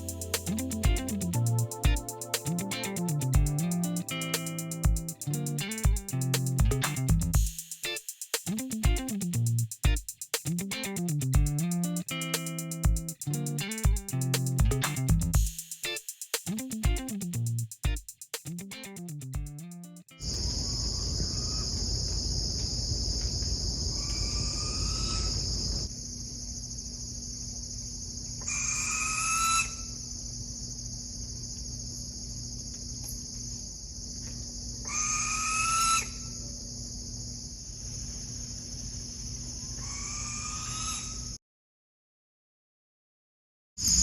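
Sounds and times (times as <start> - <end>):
insects trilling: 20.2 - 41.4
owl calling: 24.0 - 25.5, 28.5 - 30.0, 34.8 - 36.4, 39.8 - 41.4.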